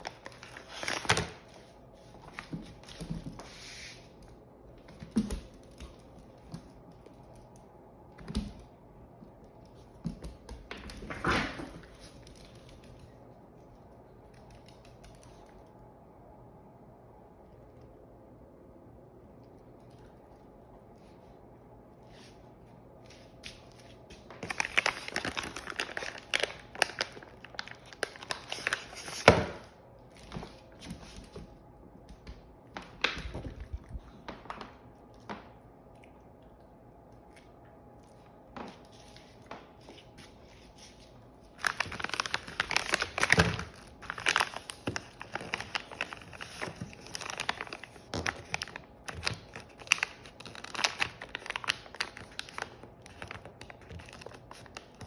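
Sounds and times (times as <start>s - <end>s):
plastic packaging crinkling: 0.0s - 1.7s, 24.2s - 30.7s, 41.5s - 55.0s.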